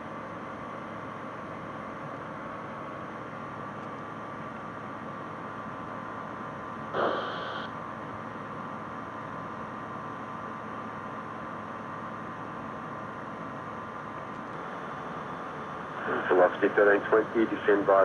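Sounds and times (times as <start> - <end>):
aircraft cockpit engine hum: 5.6 - 7.7, 13.1 - 18.0.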